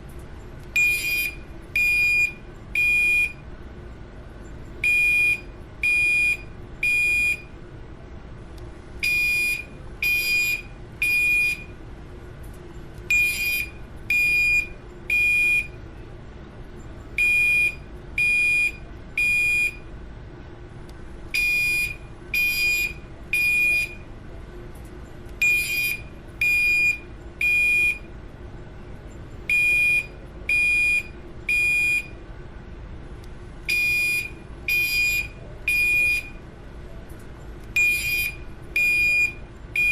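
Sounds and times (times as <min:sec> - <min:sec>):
fire alarm beeping: 0:00.8 - 0:03.4, 0:04.8 - 0:07.6, 0:09.0 - 0:11.8, 0:13.1 - 0:15.8, 0:17.2 - 0:19.9, 0:21.3 - 0:24.1, 0:25.4 - 0:28.1, 0:29.5 - 0:32.2, 0:33.7 - 0:36.4, 0:37.7 - 0:39.9.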